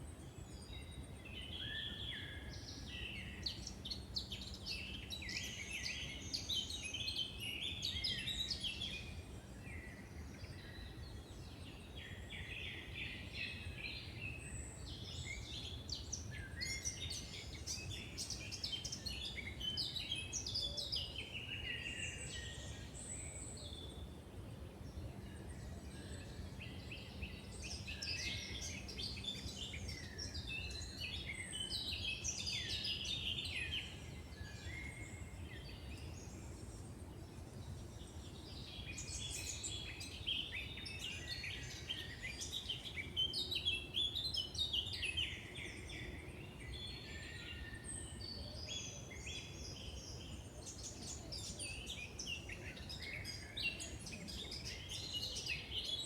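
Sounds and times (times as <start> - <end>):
birds singing and calling: 0.4 - 24.0, 25.1 - 56.0.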